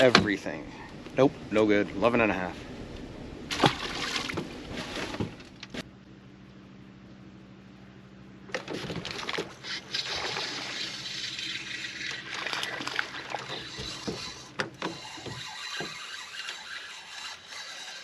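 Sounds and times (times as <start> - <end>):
low steady hum: 0.0 - 17.5
water rushing and splashing: 3.4 - 5.4, 9.1 - 14.5.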